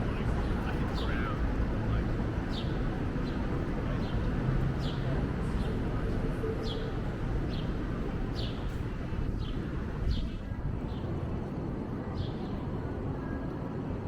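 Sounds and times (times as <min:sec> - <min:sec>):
wind rumbling on microphone: 0:07.0 - 0:14.0.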